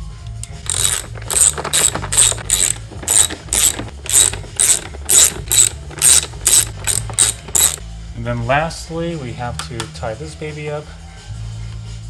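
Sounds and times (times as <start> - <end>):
hand ratchet clicking: 0.4 - 7.8.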